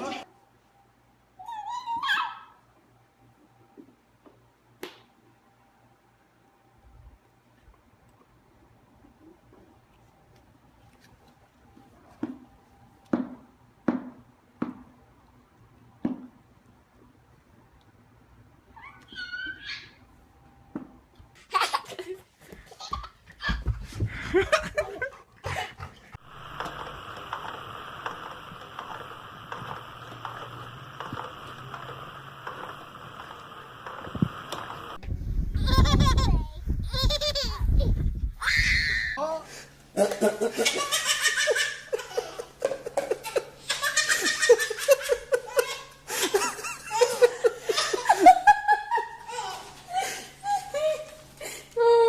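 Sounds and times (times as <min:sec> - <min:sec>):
person laughing hard: 0:23.5 - 0:25.8, 0:40.0 - 0:52.0
steady hiss: 0:26.2 - 0:35.5.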